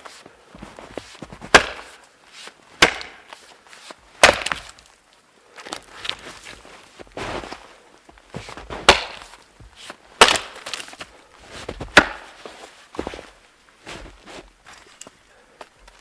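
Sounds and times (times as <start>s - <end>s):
wood being chopped: 1.4s - 2.0s, 2.8s - 3.3s, 4.2s - 4.8s, 8.7s - 9.4s, 10.2s - 11.0s, 11.7s - 12.4s.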